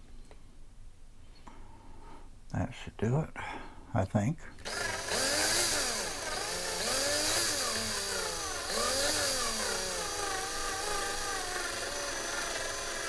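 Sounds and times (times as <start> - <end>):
power drill motor whine: 4.6 - 13.0.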